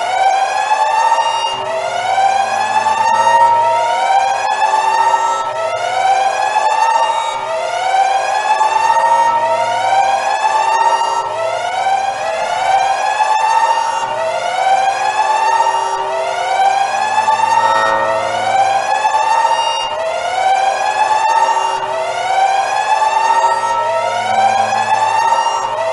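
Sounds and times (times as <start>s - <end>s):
electronic siren whooping: 0.0s - 25.9s.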